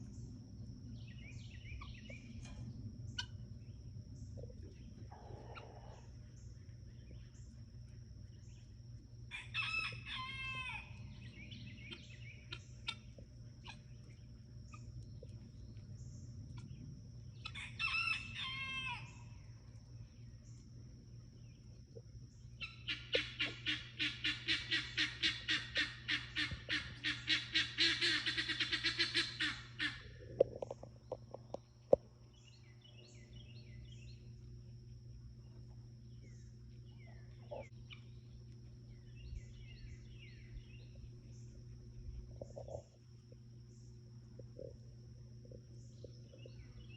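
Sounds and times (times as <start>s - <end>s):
guinea fowl calling: 9.3s - 13.8s, 17.4s - 19.2s, 22.6s - 30.2s.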